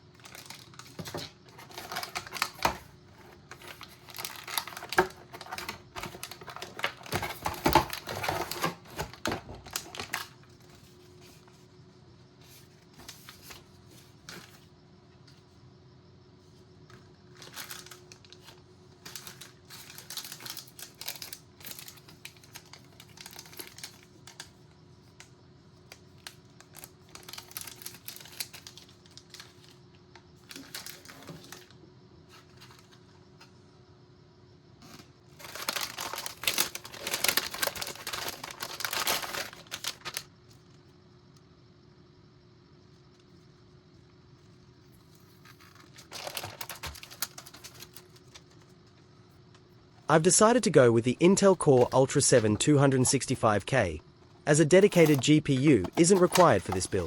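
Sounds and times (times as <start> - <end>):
cardboard packaging handled: 0.2 - 11.4, 35.4 - 40.2, 45.2 - 48.6, 54.9 - 55.2, 55.8 - 57.0.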